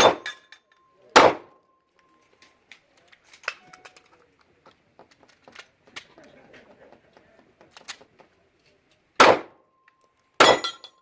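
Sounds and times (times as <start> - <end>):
gunshot ringing tone: 0.0 - 0.3, 1.2 - 1.6, 9.2 - 9.6.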